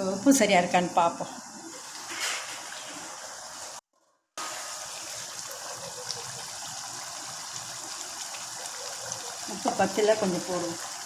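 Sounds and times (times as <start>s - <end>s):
curry bubbling in a pan: 4.4s - 11.0s.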